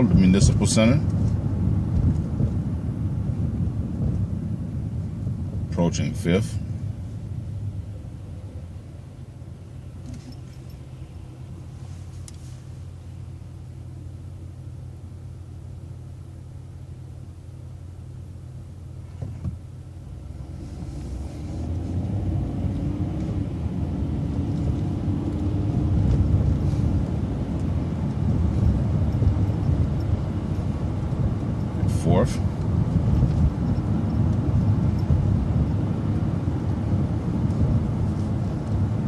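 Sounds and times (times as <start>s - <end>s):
bus engine humming and whining: 0.0s - 39.0s.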